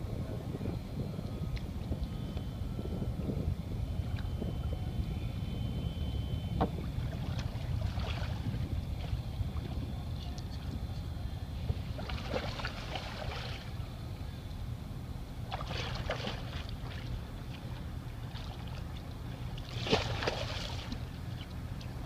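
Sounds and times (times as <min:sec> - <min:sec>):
wind rumble on microphone: 0:00.0 - 0:22.0
water splashing around kayak: 0:06.6 - 0:09.9, 0:11.6 - 0:13.8, 0:15.4 - 0:21.9.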